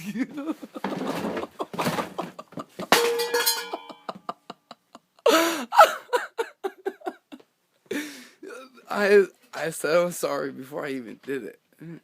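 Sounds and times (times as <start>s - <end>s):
metal ashtray clanging on floor: 2.8s - 4.1s
person's voice: 8.5s - 12.0s.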